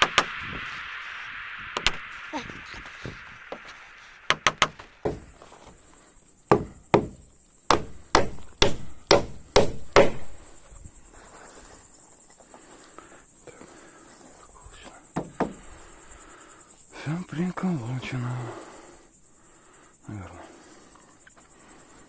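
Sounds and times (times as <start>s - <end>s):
hammer driving nails into wood: 0.0s - 0.3s, 4.3s - 5.3s, 6.5s - 10.4s.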